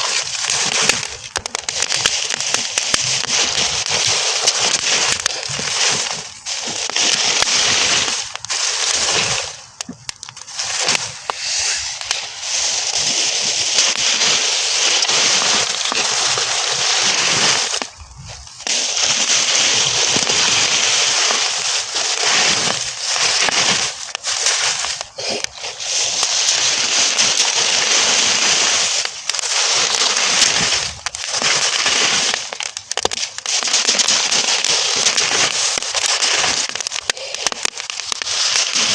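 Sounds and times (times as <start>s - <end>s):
burning straw crackling: 0.0s - 38.9s.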